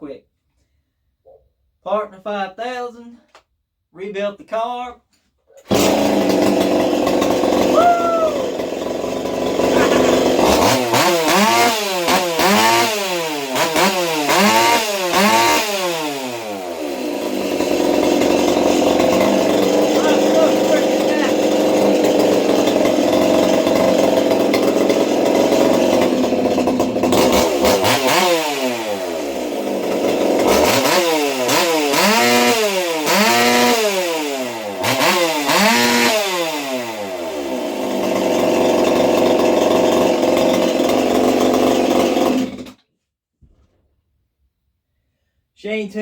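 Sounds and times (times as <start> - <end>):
chainsaw running and revving: 5.7 - 42.8.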